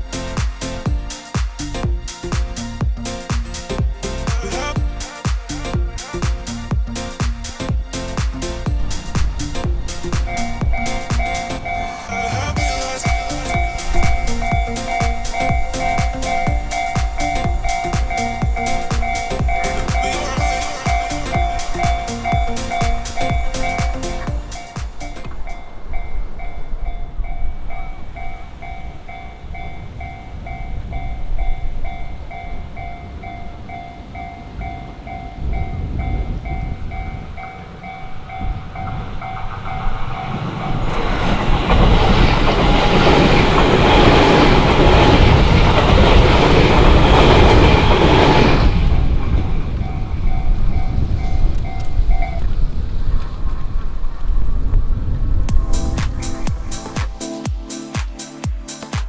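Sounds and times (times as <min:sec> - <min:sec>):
train rumble and wheel clatter: 0:00.0 - 0:56.7
level crossing bell ringing: 0:08.4 - 0:39.4.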